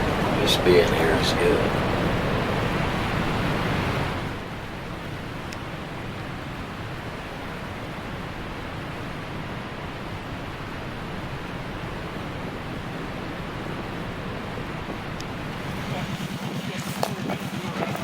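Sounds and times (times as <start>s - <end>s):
wind blowing: 0.0s - 18.0s.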